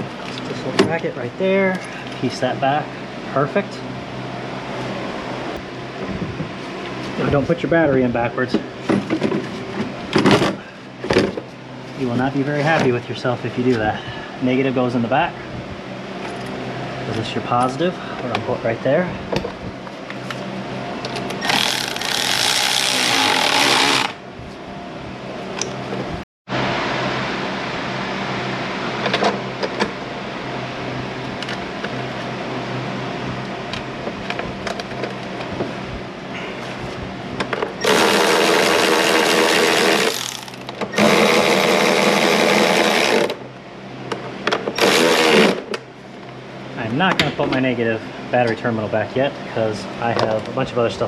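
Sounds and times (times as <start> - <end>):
background hum: 0.0 - 26.2
power tool bursts: 21.4 - 24.2, 37.8 - 43.4, 44.8 - 45.7.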